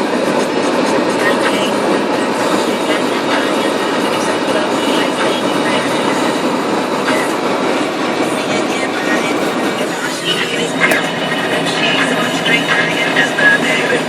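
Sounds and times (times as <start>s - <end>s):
tyres on snowy road: 0.0s - 14.0s
car cabin drive noise: 4.0s - 12.6s.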